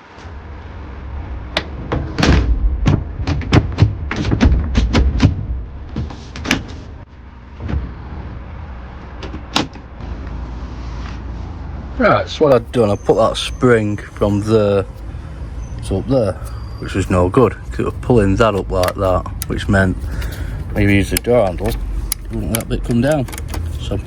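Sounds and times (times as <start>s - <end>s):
steady low rumble: 0.0s - 9.2s, 12.5s - 24.0s
truck door latch clacking: 21.0s - 23.8s.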